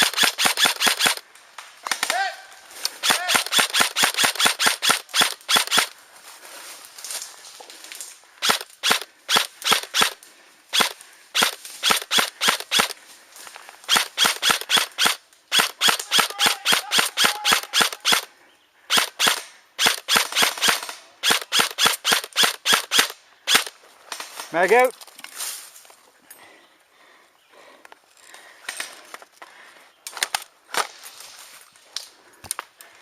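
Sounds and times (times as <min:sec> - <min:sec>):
airsoft gun firing single shots: 0:00.0 - 0:01.2, 0:03.0 - 0:05.9, 0:08.4 - 0:13.0, 0:13.9 - 0:18.3, 0:18.9 - 0:23.7.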